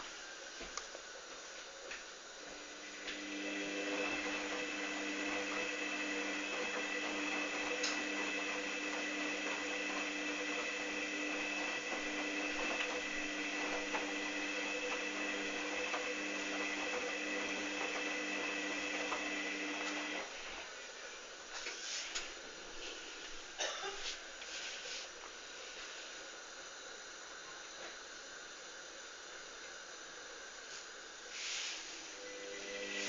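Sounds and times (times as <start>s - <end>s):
washing machine motor whining: 2.3s - 21.3s, 32.0s - 33.0s.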